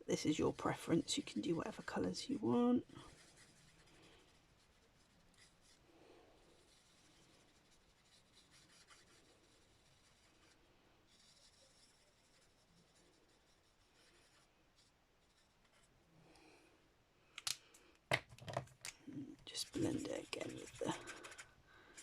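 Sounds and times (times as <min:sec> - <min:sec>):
marker scratching on card: 0:03.0 - 0:05.8, 0:06.6 - 0:15.9, 0:19.6 - 0:22.0.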